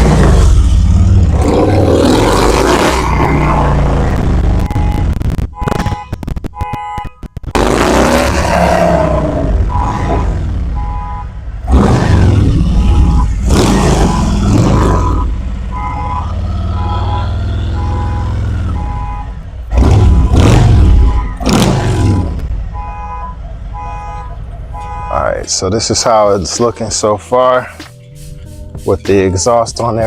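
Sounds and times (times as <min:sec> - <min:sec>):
motorcycle engine revving: 0:00.0 - 0:05.0, 0:11.7 - 0:19.0, 0:19.6 - 0:22.5.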